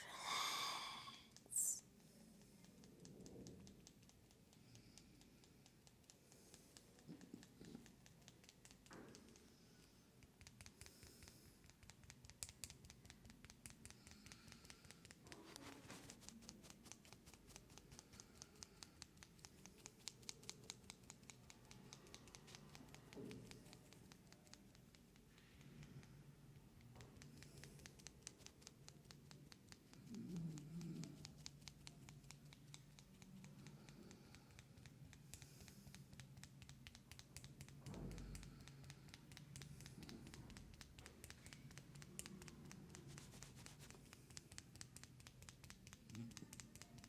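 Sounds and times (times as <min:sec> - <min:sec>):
fingers scratching scalp: 0:00.8 - 0:25.8, 0:26.5 - 0:47.0.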